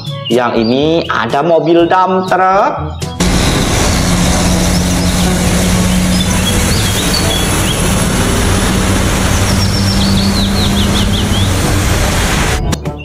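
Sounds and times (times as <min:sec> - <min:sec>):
birds chirping: 0:03.0 - 0:13.0
truck engine running: 0:03.2 - 0:12.8.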